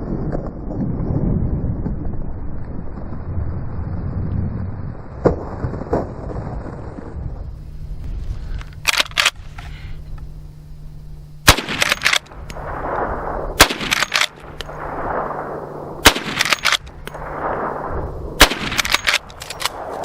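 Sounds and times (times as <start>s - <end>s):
rifle shots: 11.4s - 20.0s.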